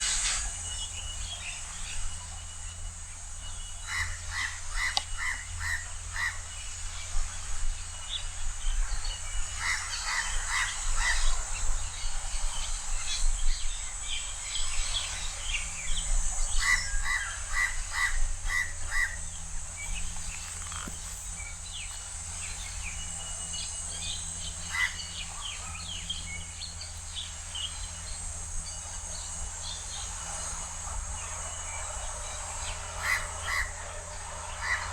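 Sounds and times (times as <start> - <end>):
steady high hiss: 0.0 - 34.9
crow cawing: 33.0 - 33.9.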